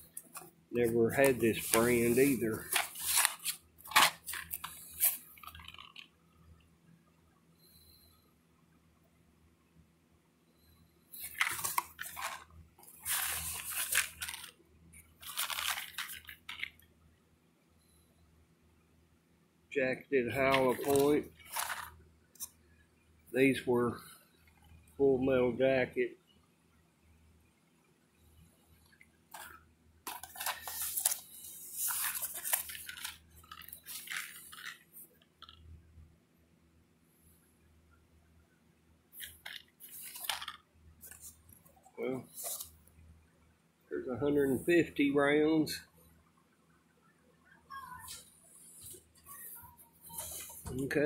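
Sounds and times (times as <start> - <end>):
packaging being torn open: 2.7 - 5.9.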